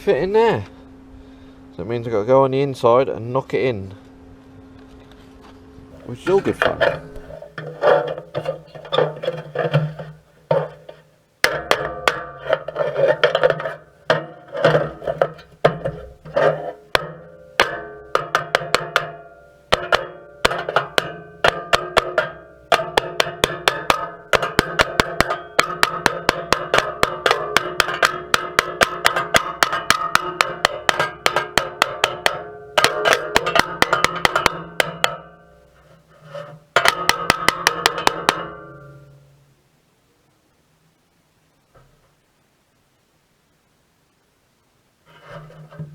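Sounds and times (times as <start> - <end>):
hammer striking steel: 6.0 - 39.2.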